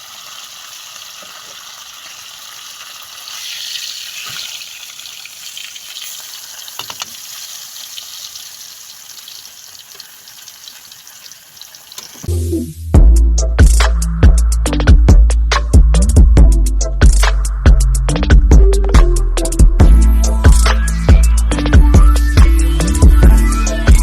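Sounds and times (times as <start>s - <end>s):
fish sizzling in hot oil: 0.0s - 12.3s
oil popping: 0.0s - 12.3s.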